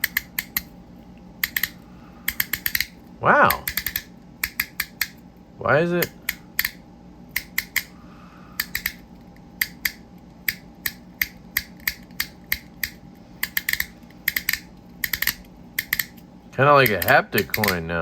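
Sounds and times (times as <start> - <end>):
dial toy clicking: 0.0 - 0.7, 1.4 - 2.9, 3.5 - 5.2, 6.0 - 7.9, 8.6 - 9.0, 9.6 - 16.2, 16.8 - 17.9.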